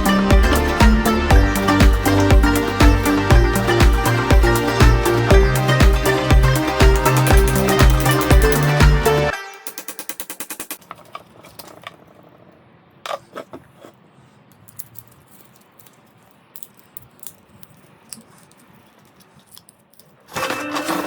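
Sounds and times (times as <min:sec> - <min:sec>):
small hard objects clicking: 0:14.6 - 0:20.2.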